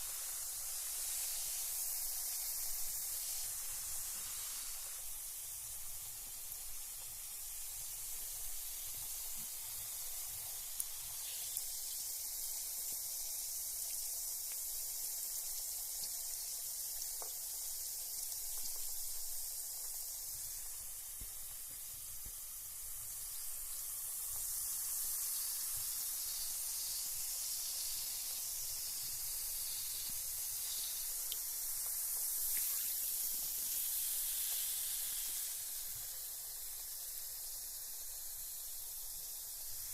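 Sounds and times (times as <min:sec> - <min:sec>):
bath bomb fizzing in water: 0:00.0 - 0:39.9
faint ticks: 0:30.1 - 0:32.9.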